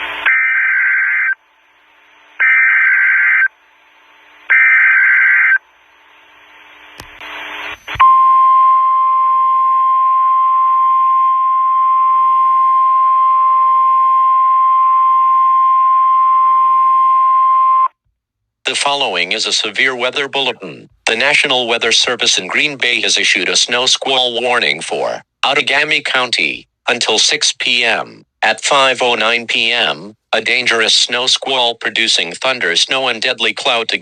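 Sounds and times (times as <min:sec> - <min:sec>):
radio static hiss: 0:00.0 - 0:00.4, 0:01.2 - 0:08.0, 0:18.7 - 0:34.0
steady alarm tone: 0:00.1 - 0:01.4, 0:02.4 - 0:03.6, 0:04.4 - 0:05.6, 0:08.0 - 0:17.9.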